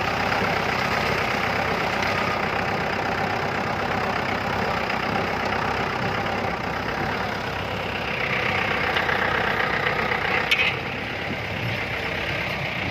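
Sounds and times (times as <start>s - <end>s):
jeep engine idling: 0.0s - 12.9s.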